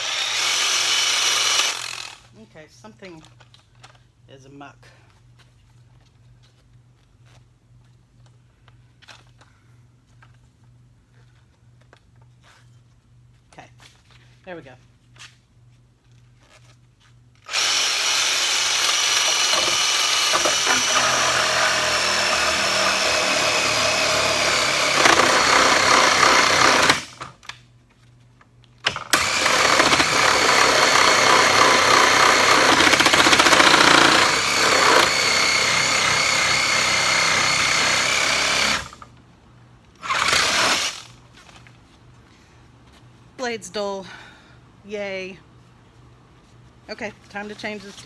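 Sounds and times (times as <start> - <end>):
electric saw cutting wood: 0.0 - 2.2, 17.5 - 27.2, 29.0 - 39.0, 40.0 - 41.1.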